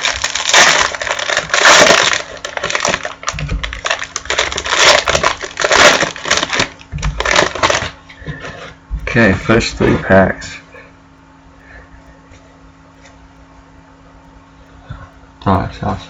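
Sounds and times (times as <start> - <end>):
card wrappers crinkling and tearing: 0.0 - 8.0.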